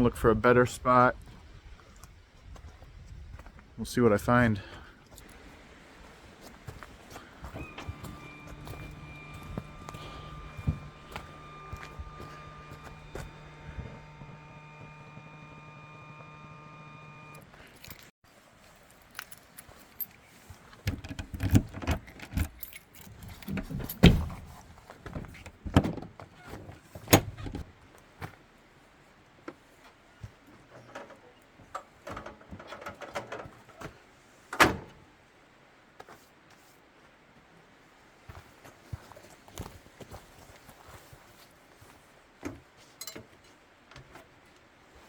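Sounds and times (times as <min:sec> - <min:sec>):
gear clinking and rattling: 0:06.7 - 0:14.2, 0:17.5 - 0:24.6
heavy thumps: 0:07.5 - 0:15.0.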